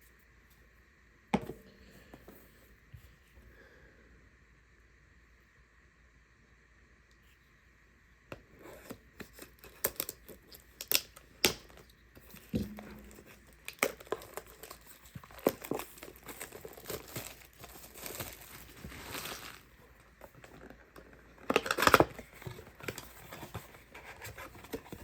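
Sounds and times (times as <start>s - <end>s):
plastic packaging tearing and crinkling: 8.8s - 25.0s.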